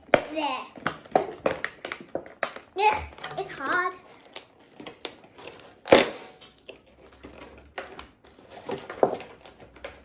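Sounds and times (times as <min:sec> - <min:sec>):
packaging clicks and rustles: 0:00.8 - 0:10.0
plastic packaging cracking: 0:00.9 - 0:03.5, 0:04.2 - 0:08.1.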